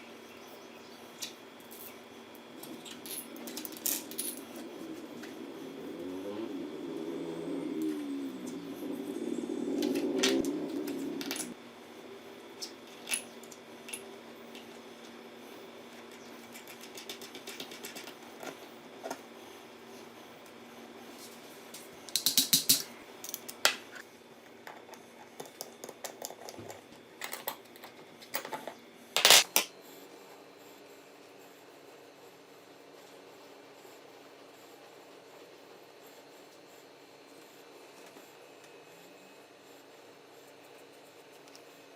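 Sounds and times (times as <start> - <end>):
motor hum: 0.0 - 22.2.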